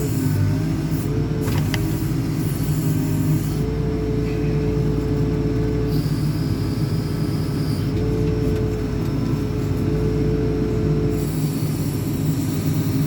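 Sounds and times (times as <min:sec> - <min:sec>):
hydraulic whine: 0:00.0 - 0:03.7, 0:05.9 - 0:08.2, 0:11.0 - 0:13.0
diesel engine under load: 0:00.0 - 0:13.0.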